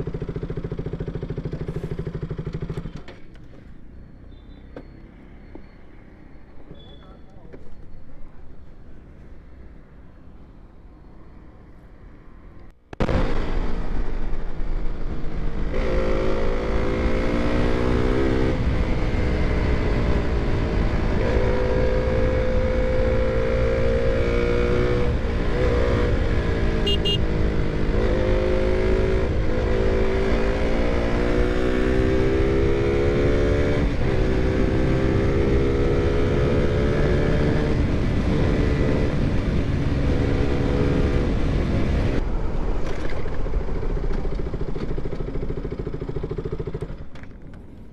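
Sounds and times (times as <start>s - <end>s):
wind and road noise: 0.0s - 47.9s
motorcycle engine revving: 13.4s - 42.2s, 43.4s - 47.2s.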